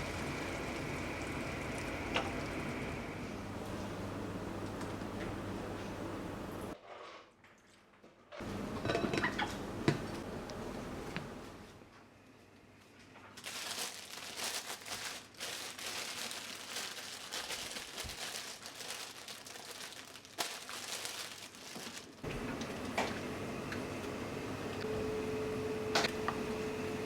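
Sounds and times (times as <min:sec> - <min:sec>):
plastic packaging crinkling: 0:13.4 - 0:22.3.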